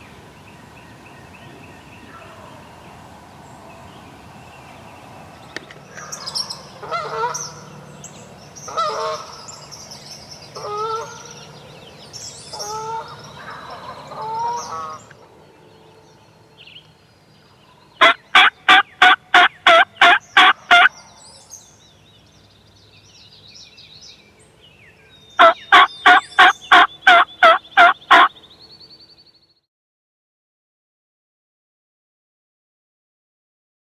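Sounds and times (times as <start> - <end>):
evenly spaced bird calls: 0.0 - 29.7
songbirds chirping: 0.0 - 29.7
turkey gobbling: 6.2 - 7.4, 18.0 - 20.9, 25.4 - 28.3.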